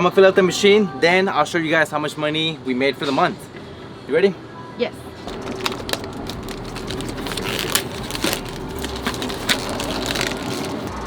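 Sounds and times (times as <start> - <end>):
packaging crinkling: 5.2 - 11.0.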